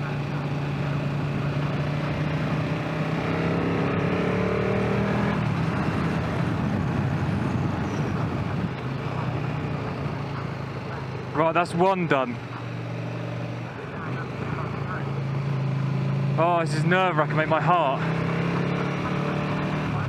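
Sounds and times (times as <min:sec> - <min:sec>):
motorcycle engine running: 0:00.0 - 0:20.0
wind noise: 0:05.3 - 0:08.9.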